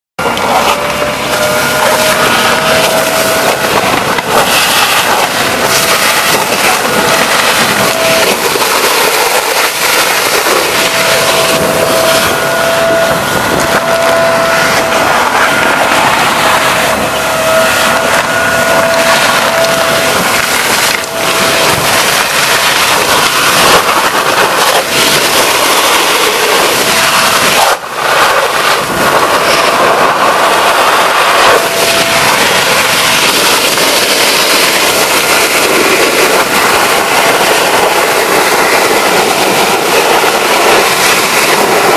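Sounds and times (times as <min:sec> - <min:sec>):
vacuum cleaner running: 0:00.2 - 0:41.9.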